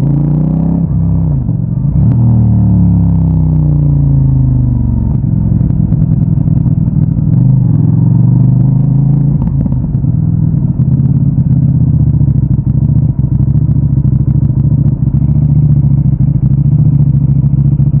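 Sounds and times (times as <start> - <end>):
motorcycle engine idling: 0.9 - 18.0.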